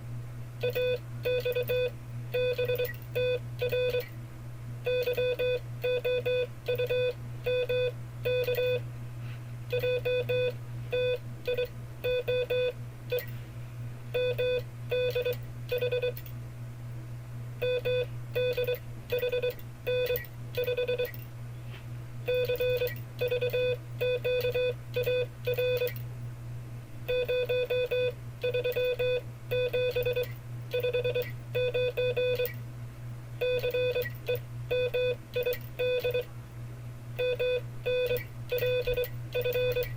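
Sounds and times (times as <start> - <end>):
steady low hum: 0.0 - 39.9
morse code tone: 27.1 - 32.5, 34.7 - 36.3, 37.2 - 39.9.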